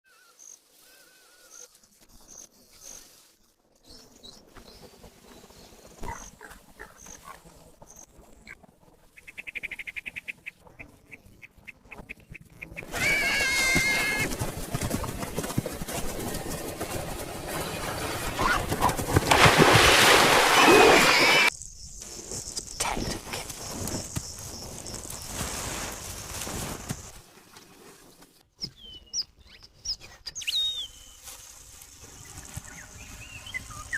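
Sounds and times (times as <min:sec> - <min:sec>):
whistled bird calls: 0:28.6 - 0:31.2.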